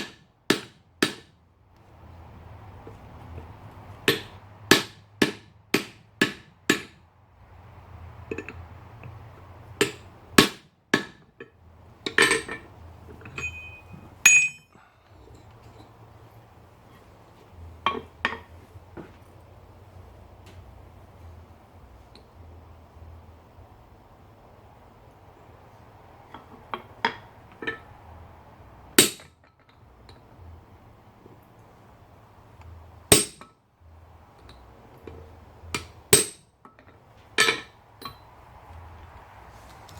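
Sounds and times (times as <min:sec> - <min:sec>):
low steady hum: 0:01.4 - 0:39.9
hammer striking metal: 0:04.1 - 0:07.0, 0:13.3 - 0:14.8, 0:29.0 - 0:29.3, 0:33.1 - 0:33.5, 0:35.8 - 0:36.4
metal tools clinking: 0:12.1 - 0:16.0
loud ringing metal strike: 0:13.4 - 0:14.7.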